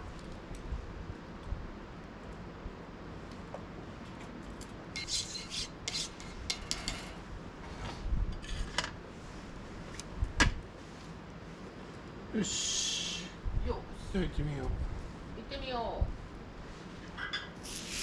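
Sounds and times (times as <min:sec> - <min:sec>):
scraping rasping strokes: 0:05.0 - 0:07.2.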